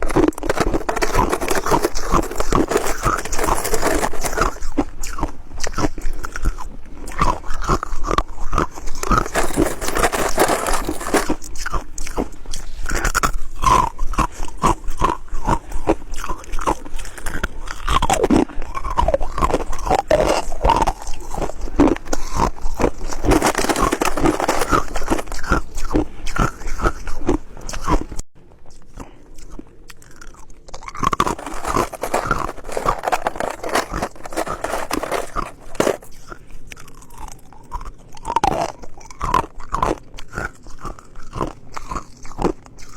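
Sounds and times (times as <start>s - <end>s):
person crunching ice: 0.0s - 5.2s, 8.7s - 11.8s, 22.4s - 26.0s, 30.1s - 37.4s.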